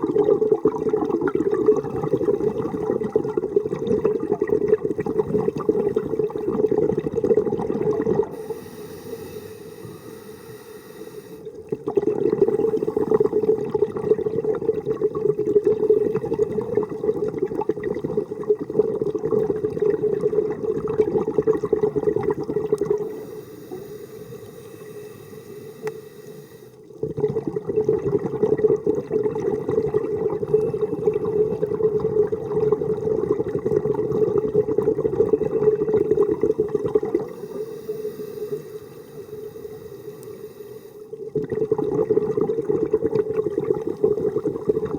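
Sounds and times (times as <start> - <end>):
exhaled bubbles gurgling underwater: 0.0 - 44.9
hissing regulator inhale: 8.3 - 11.6, 12.5 - 13.5, 23.0 - 26.9, 37.2 - 41.2.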